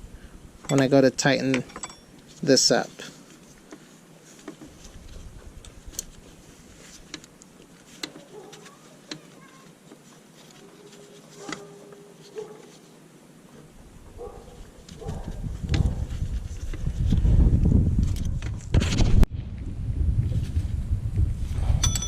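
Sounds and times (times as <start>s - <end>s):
hand tools clinking on metal: 0.6s - 2.3s.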